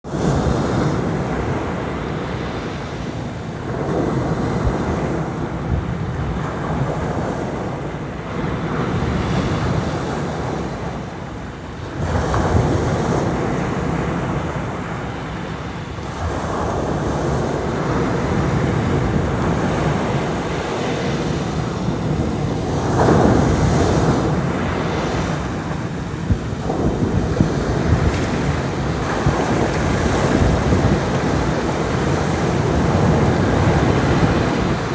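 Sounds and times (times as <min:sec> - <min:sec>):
wind buffeting microphone: 0:00.1 - 0:34.9
heavy surf breaking: 0:11.9 - 0:34.9.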